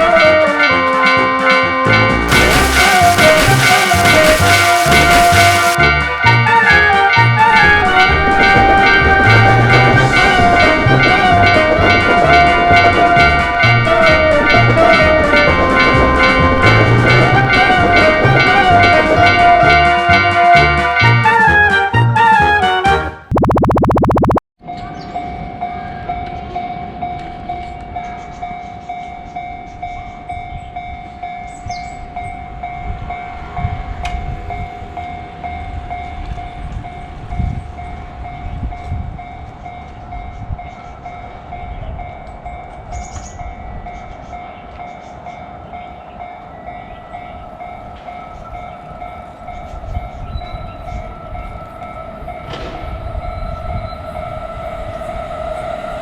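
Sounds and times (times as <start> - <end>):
train rumbling: 0.0 - 22.5, 24.6 - 56.0
steady high tone: 2.3 - 20.5.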